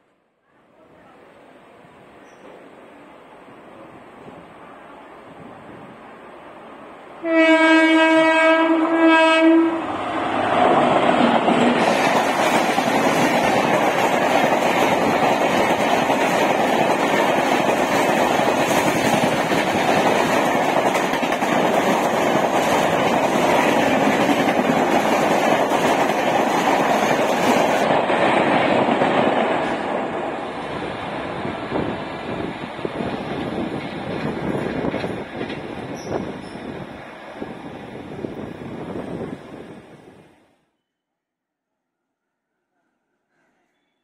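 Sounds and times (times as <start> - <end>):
train coaches rushing past: 0.8 - 40.5
locomotive horn: 7.2 - 9.9.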